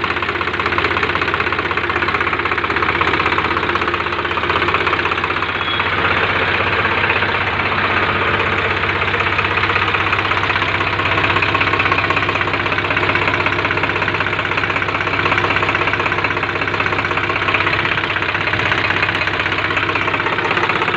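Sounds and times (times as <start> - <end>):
tractor diesel engine running: 0.0 - 20.9.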